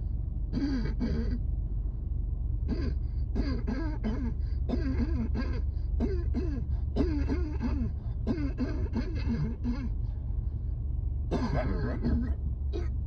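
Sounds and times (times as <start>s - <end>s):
low rumble: 0.0s - 13.0s
person coughing: 0.6s - 1.4s, 2.7s - 10.0s, 11.3s - 13.0s.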